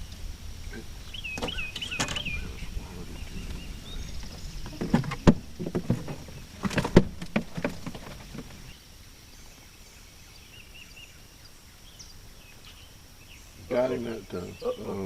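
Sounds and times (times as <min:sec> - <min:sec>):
gear knocking against boat: 0:03.4 - 0:08.7.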